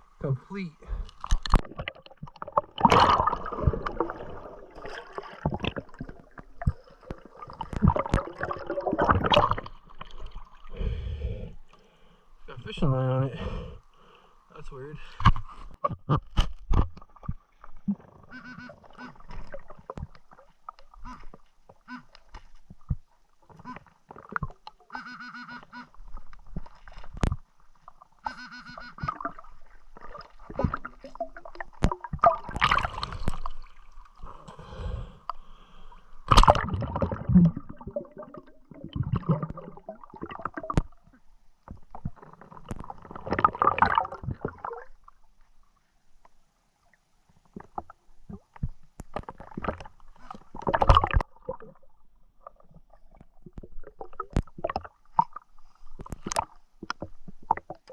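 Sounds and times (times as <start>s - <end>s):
water gurgling and sloshing: 0.0s - 57.9s.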